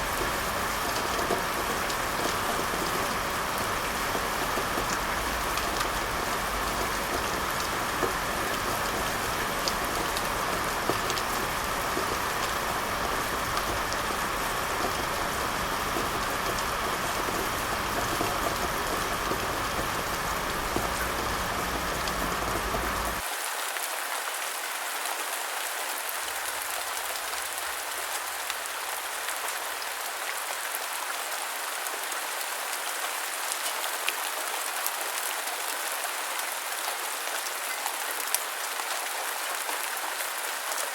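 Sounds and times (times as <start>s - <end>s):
rain falling: 0.0s - 40.9s.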